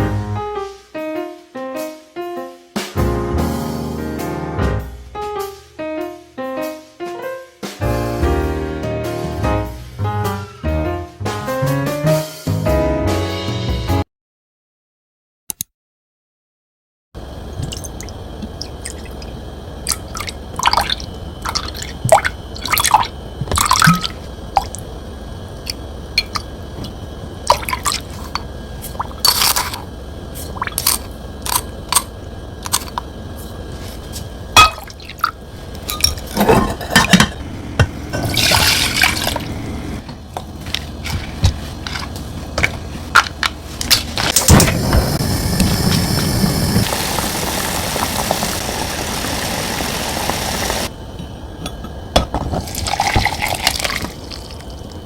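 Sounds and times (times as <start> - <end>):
steady low hum: 17.2 - 55.0.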